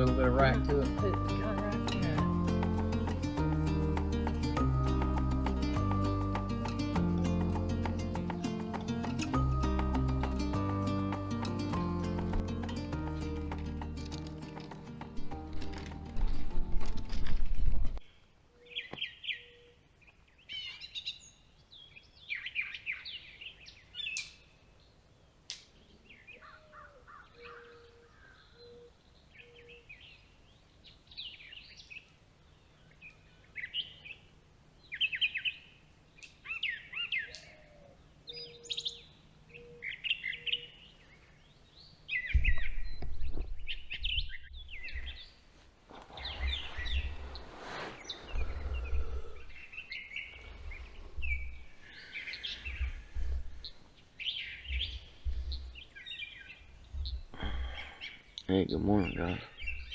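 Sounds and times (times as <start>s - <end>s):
birds chirping and singing: 46.1s - 59.9s.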